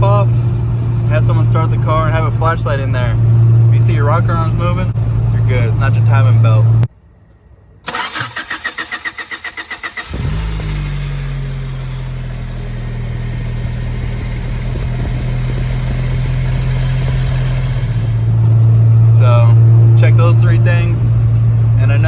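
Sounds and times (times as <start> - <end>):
engine cranking by starter: 7.9 - 18.5
car engine idling: 7.9 - 22.0.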